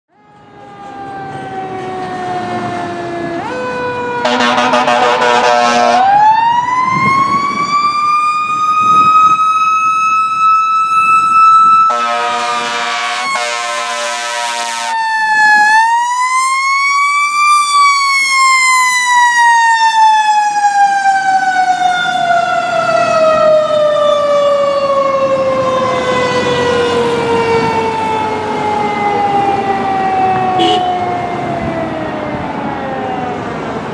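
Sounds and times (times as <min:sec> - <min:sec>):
fire engine siren wailing: 0:00.1 - 0:33.9
air horn blasts: 0:04.2 - 0:06.1, 0:11.9 - 0:14.9, 0:30.5 - 0:31.0.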